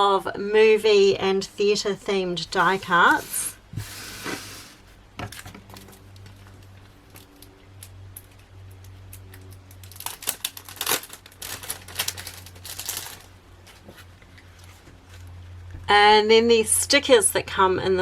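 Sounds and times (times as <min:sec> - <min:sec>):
paper crinkling and rustling: 0:02.5 - 0:04.8, 0:09.8 - 0:15.3.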